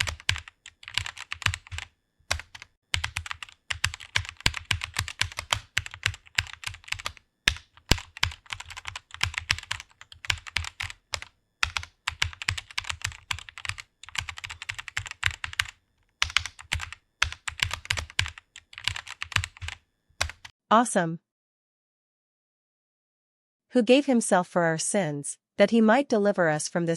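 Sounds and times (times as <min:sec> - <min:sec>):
computer keyboard typing: 0:00.0 - 0:20.5.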